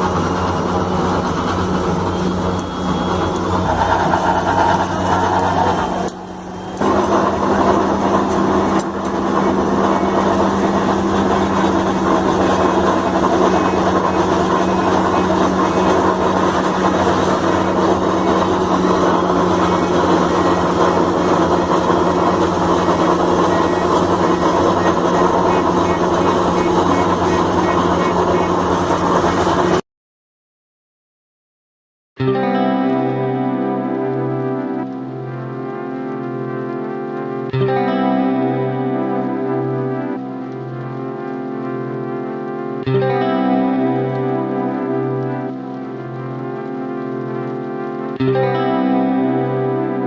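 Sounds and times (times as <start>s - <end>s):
heavy machine engine humming: 0.0s - 29.8s.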